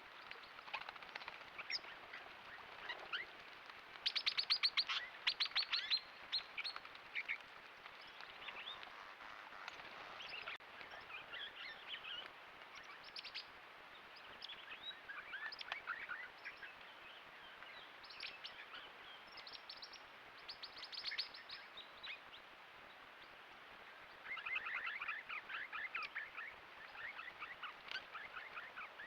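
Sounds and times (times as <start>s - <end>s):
flock of parrots chirping: 4.2s - 6.1s, 8.4s - 12.2s, 24.2s - 29.0s.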